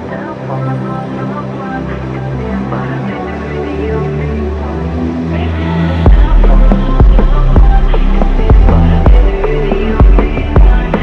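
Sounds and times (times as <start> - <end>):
low synth bass: 4.1 - 11.0.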